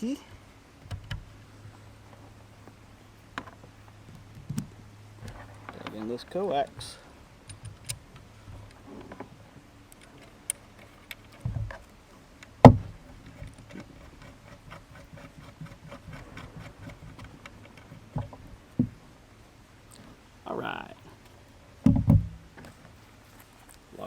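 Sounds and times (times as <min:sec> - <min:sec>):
dull thump: 0:11.4 - 0:11.8, 0:12.6 - 0:13.8, 0:18.1 - 0:19.0, 0:21.8 - 0:22.7.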